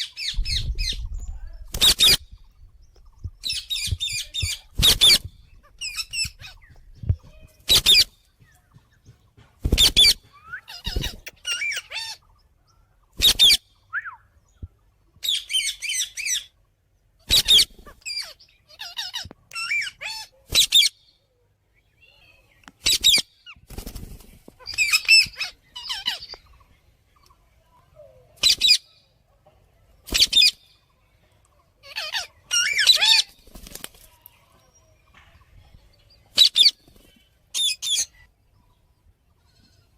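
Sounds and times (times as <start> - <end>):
parrot squawking: 10.6 - 12.2, 31.8 - 33.3.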